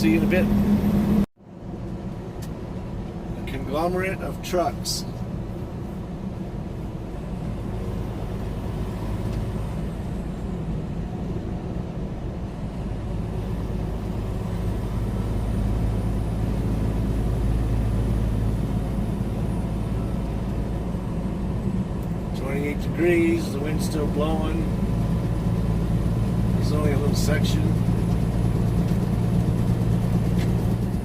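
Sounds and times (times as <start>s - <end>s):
road noise: 0.0s - 31.0s
truck diesel engine drone: 0.0s - 31.0s.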